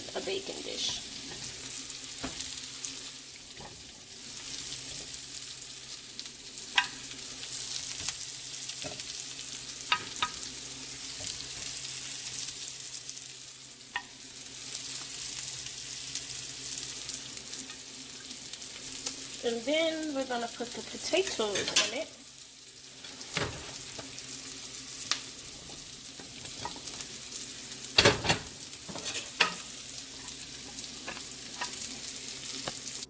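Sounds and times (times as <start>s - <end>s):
onions sizzling in oil: 0.0s - 33.0s
utensil clinking on cookware: 21.2s - 22.1s, 28.0s - 29.7s.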